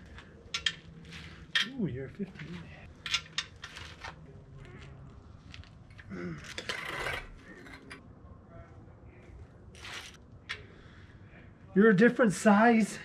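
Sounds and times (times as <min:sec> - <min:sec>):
metal hand tools clinking: 0:00.5 - 0:01.8.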